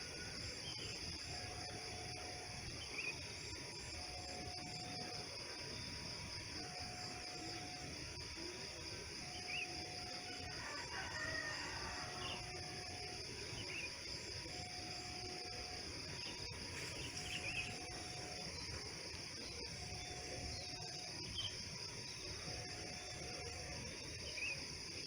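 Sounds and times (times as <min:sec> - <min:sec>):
high insect drone: 0:00.0 - 0:25.0
rooster crowing: 0:10.4 - 0:12.9.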